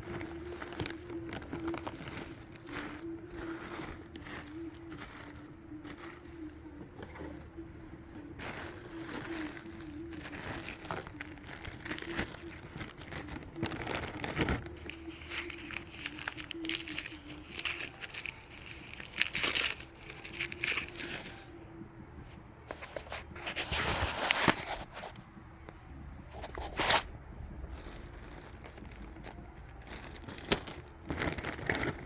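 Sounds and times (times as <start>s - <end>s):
packing wrap crinkling: 0.0s - 21.6s, 26.3s - 32.0s.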